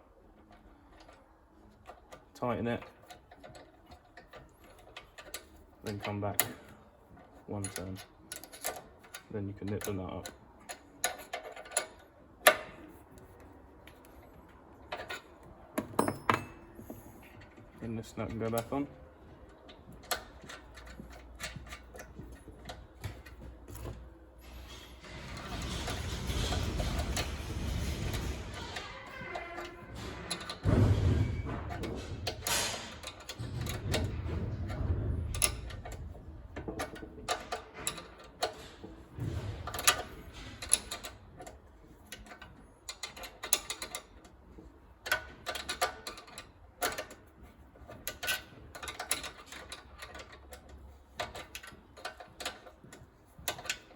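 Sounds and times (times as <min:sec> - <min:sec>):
metal scraping: 0:24.4 - 0:36.4.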